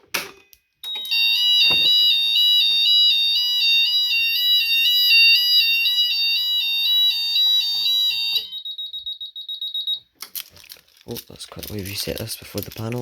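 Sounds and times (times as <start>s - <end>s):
fire alarm two-tone warble: 0.8s - 10.1s.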